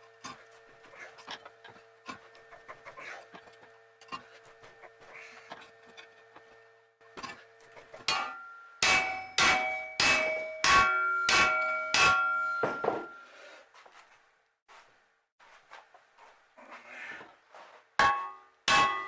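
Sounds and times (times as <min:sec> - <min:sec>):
hammer striking metal: 0:08.0 - 0:13.2, 0:18.0 - 0:19.0.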